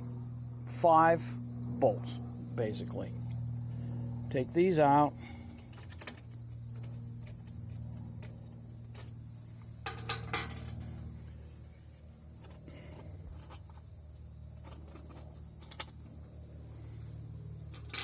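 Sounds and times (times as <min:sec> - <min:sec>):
high insect trill: 0:00.0 - 0:18.0
steady low hum: 0:00.0 - 0:18.0
metallic clicks of tools and bolts: 0:09.8 - 0:10.9, 0:17.7 - 0:18.0.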